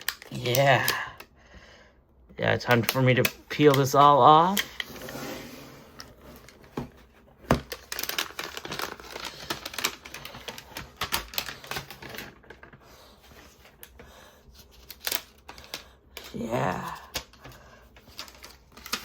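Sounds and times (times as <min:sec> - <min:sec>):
plastic wrapping crackling: 0:00.0 - 0:01.2, 0:07.4 - 0:19.0.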